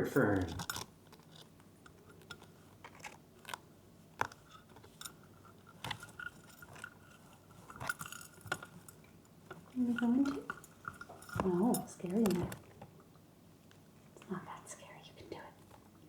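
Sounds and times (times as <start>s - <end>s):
bird crunching a treat with beak: 0.4s - 9.0s.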